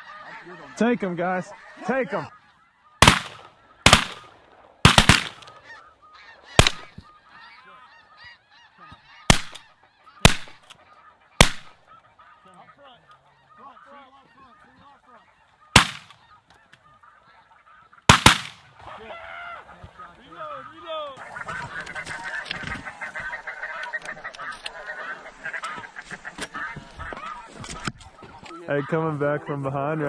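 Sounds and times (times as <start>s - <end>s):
geese calling: 0.0s - 30.0s
shotgun blasts: 3.0s - 5.5s, 6.6s - 6.9s, 9.3s - 9.6s, 10.2s - 10.6s, 11.4s - 11.8s, 15.8s - 16.2s, 18.1s - 18.6s.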